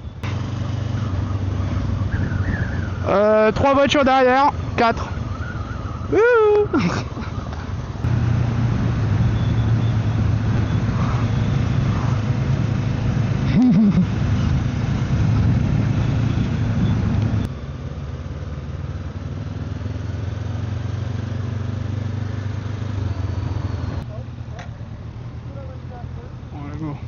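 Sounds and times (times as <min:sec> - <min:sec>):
motorcycle engine running: 0:00.0 - 0:06.0, 0:07.5 - 0:26.9.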